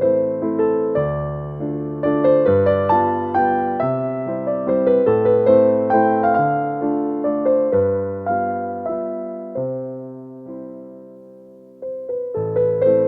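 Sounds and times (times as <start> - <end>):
piano music: 0.0 - 13.0.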